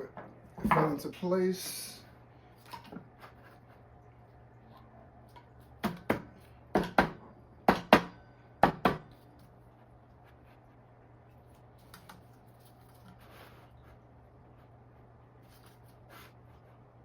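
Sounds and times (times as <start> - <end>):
faint steady hum: 0.0 - 17.0
sharp knocks on metal parts: 5.8 - 9.1.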